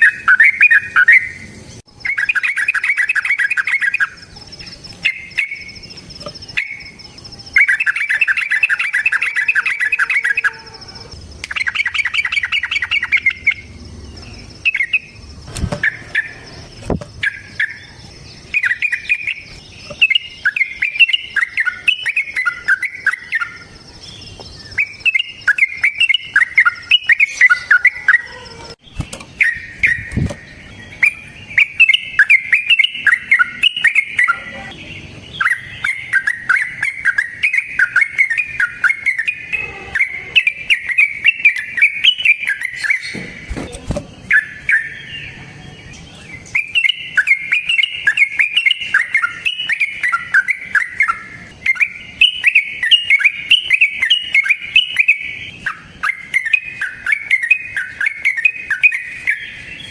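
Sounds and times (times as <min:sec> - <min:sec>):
bulbul singing warbled notes: 0:00.0 - 0:43.2, 0:44.2 - 0:59.9.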